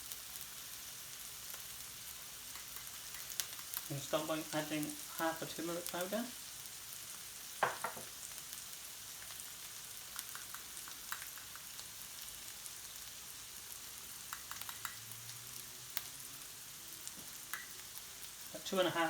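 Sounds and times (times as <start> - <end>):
onions sizzling in oil: 0.0 - 19.0
light clicks and pops: 14.3 - 15.0.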